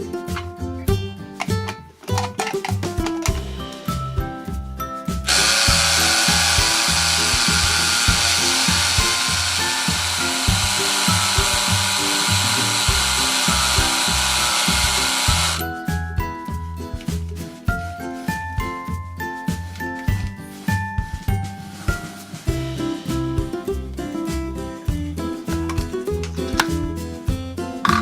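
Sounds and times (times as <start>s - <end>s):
background music with steady beat: 0.0s - 28.0s
toy blender motor running: 5.3s - 15.6s.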